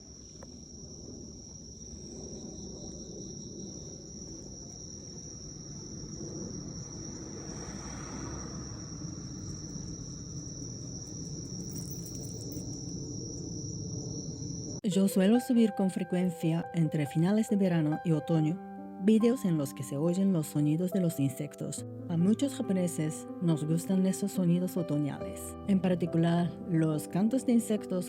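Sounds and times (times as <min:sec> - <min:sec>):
crickets chirring: 0:00.0 - 0:17.9, 0:19.4 - 0:28.0
low background rumble: 0:00.6 - 0:14.8.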